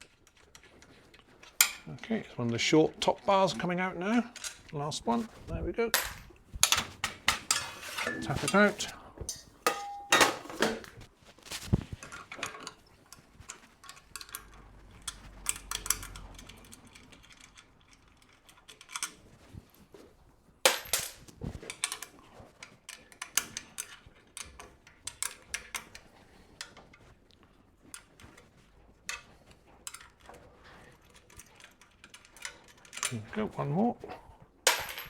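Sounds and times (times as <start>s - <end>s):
metal knocks and clinks: 6.0s - 10.9s, 20.7s - 21.2s, 34.7s - 35.0s.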